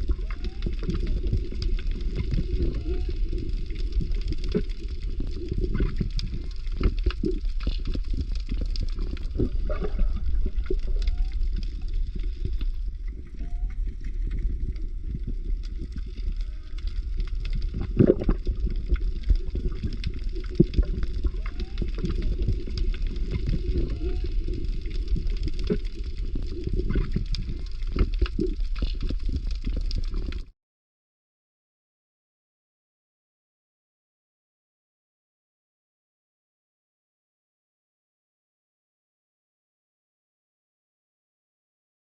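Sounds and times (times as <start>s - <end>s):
bubbling: 0.0s - 30.5s
deep underwater rumble: 0.0s - 30.5s
underwater clicks: 0.0s - 30.5s.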